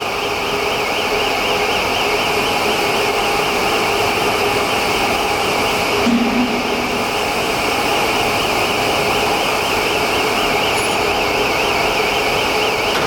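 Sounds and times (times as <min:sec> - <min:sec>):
cnc router running: 0:00.0 - 0:13.0
brief low hum: 0:06.0 - 0:07.8
wavering high whine: 0:06.0 - 0:12.5.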